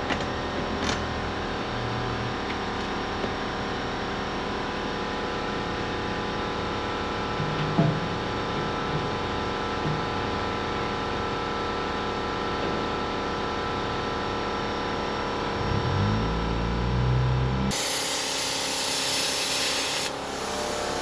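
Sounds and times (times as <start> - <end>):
machine drone: 15.1 - 21.0
deep engine note: 15.4 - 17.8.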